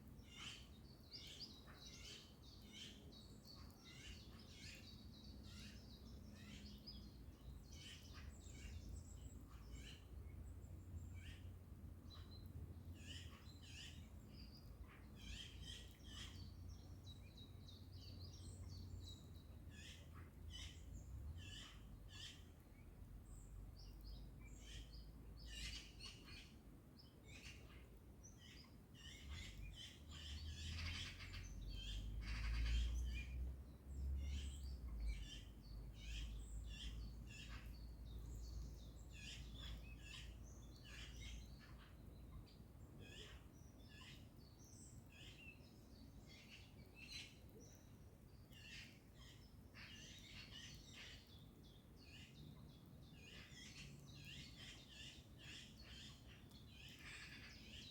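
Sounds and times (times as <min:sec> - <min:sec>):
birds chirping and calling: 0:28.4 - 0:47.9, 0:48.5 - 0:57.9.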